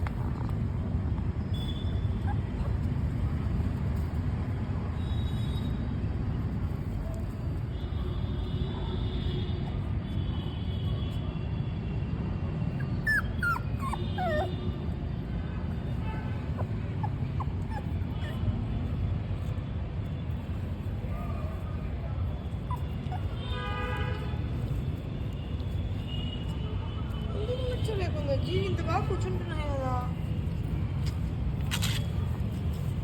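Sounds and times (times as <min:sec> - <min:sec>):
puppy whining: 0:02.0 - 0:03.2, 0:12.8 - 0:14.6, 0:16.5 - 0:18.5, 0:22.5 - 0:23.4.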